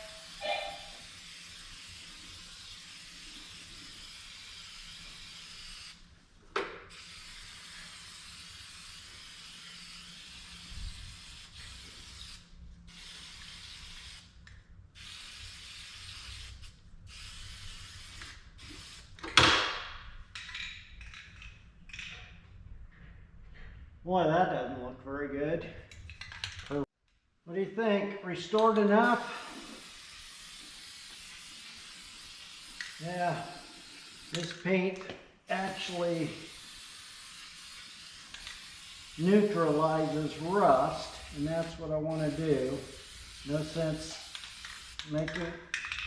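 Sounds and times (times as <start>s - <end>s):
aerosol spray paint hissing: 0.0s - 6.0s, 6.9s - 14.3s, 15.0s - 19.1s, 29.0s - 34.5s, 35.5s - 45.2s.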